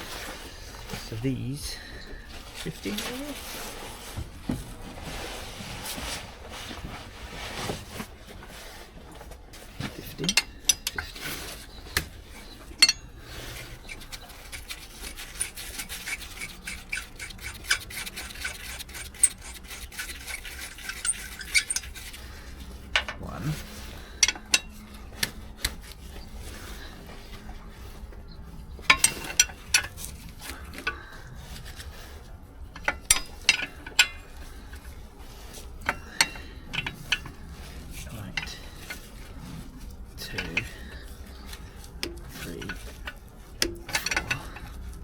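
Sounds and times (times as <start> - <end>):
hand tools clinking on metal: 9.6 - 22.2, 28.8 - 31.8, 32.7 - 35.0, 35.8 - 39.2, 40.2 - 44.8.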